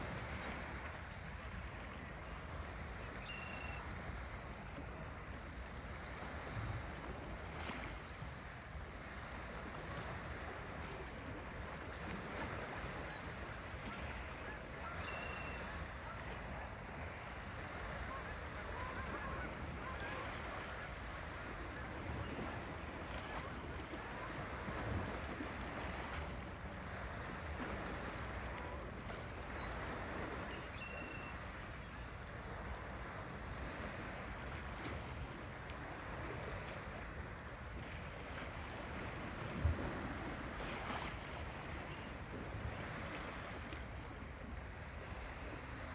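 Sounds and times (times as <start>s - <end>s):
water rushing: 11.4s - 29.0s
distant geese honking: 12.6s - 16.8s.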